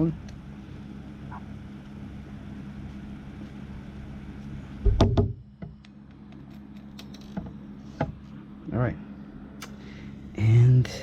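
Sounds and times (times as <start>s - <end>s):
steady low hum: 0.0s - 11.0s
loud knocks on work surface: 4.8s - 5.8s.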